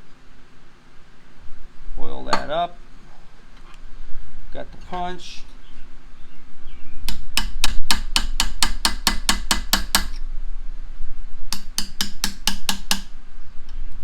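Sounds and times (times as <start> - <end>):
hammer tapping on metal punch: 7.1 - 10.2, 11.5 - 13.1.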